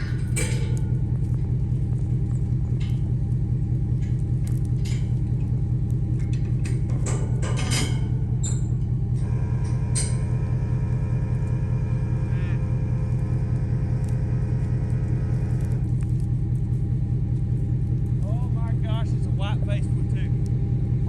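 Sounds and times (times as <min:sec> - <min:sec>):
light rattles and clicks: 0:00.0 - 0:09.1, 0:13.6 - 0:20.6
vehicle engine running: 0:00.0 - 0:21.0.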